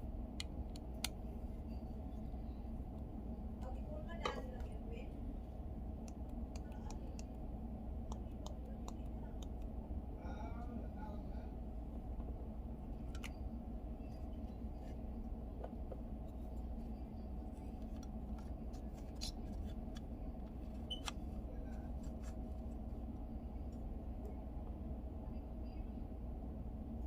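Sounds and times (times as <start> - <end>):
low background hum: 0.0 - 27.0.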